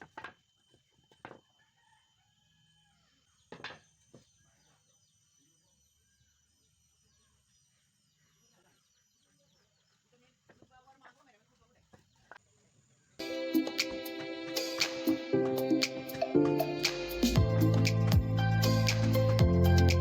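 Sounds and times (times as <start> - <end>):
distant rooster crowing: 1.4 - 3.3
small birds chirping: 3.0 - 13.2.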